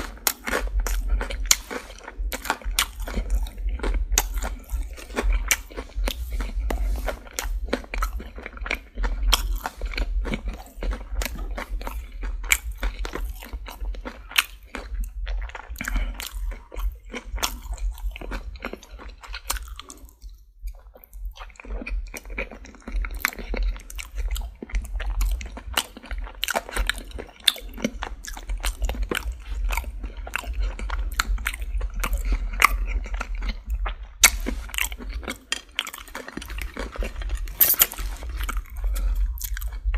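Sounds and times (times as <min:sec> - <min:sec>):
crunchy chewing of fried chicken: 0:00.0 - 0:39.9.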